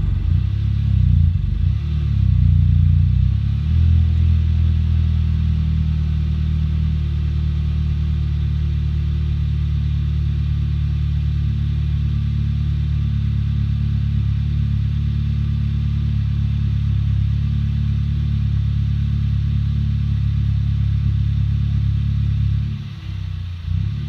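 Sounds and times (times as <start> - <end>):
rough car engine idling: 0.0 - 5.3.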